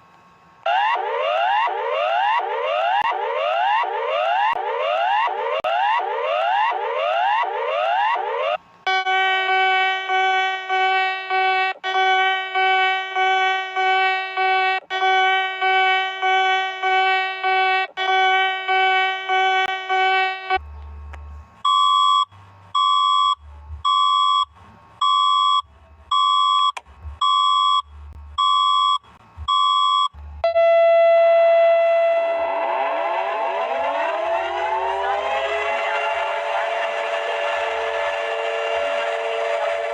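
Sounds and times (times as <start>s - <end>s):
short beeps: 21.7s - 30.2s
steady tone with falling sweeps: 32.2s - 39.9s.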